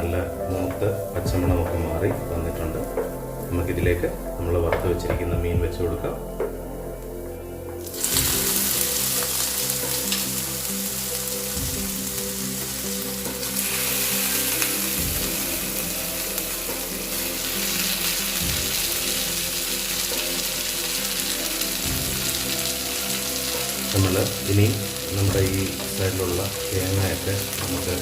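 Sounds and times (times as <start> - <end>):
fish sizzling in oil: 7.8 - 28.0.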